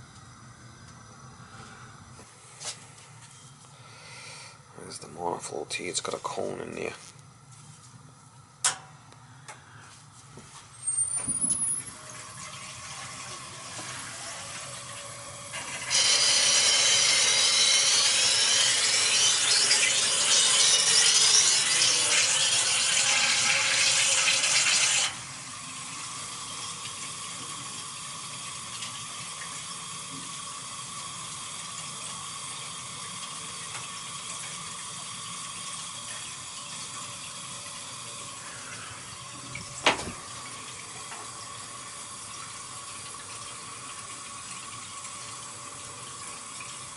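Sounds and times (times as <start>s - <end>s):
heating system hum: 0.0s - 46.9s
water hissing through pipes: 9.6s - 46.9s.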